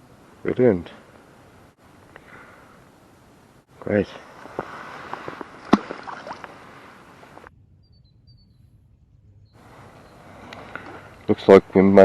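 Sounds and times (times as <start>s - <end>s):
faint high chirps: 7.7s - 10.2s.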